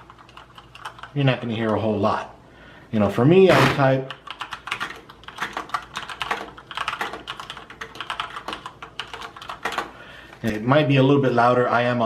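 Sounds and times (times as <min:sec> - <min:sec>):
fast mechanical keyboard typing: 0:00.0 - 0:01.8, 0:03.5 - 0:10.0.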